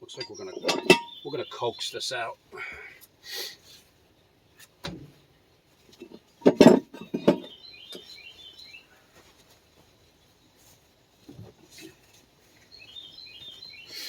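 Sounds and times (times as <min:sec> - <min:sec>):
tools clanking on metal: 0:00.0 - 0:01.2, 0:06.0 - 0:08.1
small birds chirping: 0:00.0 - 0:03.9, 0:06.9 - 0:10.9, 0:11.6 - 0:14.0.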